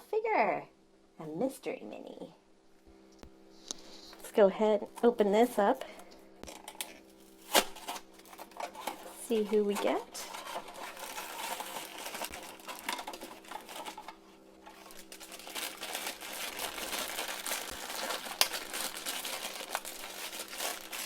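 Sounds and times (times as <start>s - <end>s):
crinkly packaging crumpled by hand: 6.5s - 21.0s.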